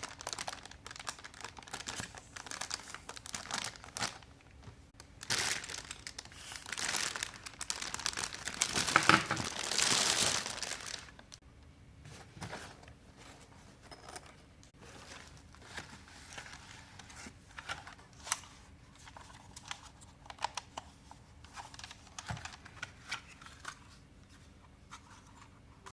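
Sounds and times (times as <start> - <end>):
plastic packaging crinkling and tearing: 0.0 - 4.4, 5.0 - 11.4.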